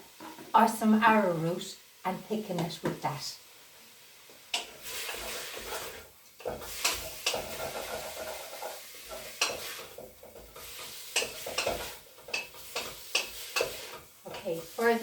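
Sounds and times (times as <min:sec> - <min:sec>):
chicken sizzling in a pot: 0:00.0 - 0:15.0
utensil scraping a pot: 0:04.5 - 0:15.0.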